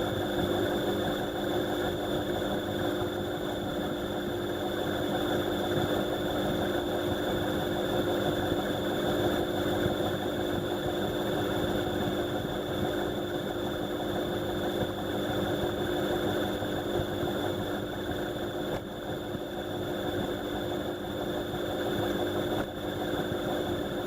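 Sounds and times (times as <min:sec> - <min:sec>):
washing machine running: 0:00.0 - 0:24.0.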